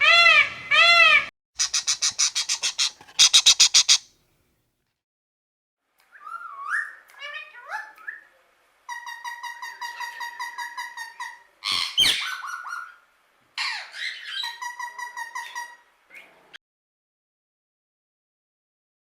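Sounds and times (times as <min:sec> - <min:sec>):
bird calling in fast runs: 0:01.6 - 0:04.1
harsh sweeping bird call: 0:01.6 - 0:04.1.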